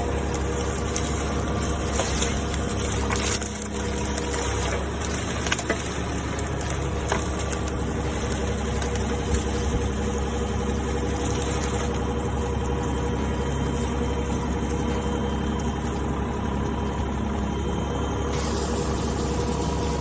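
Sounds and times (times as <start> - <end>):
diesel engine running: 0.0 - 20.0
high hiss: 18.3 - 20.0.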